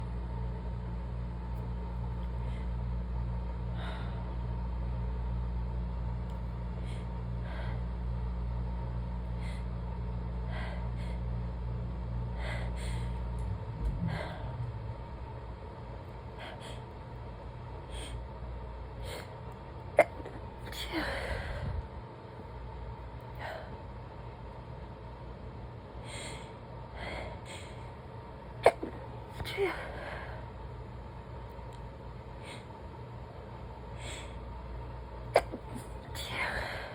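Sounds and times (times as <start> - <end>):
stifled sneezes: 28.6 - 29.9, 35.3 - 36.5.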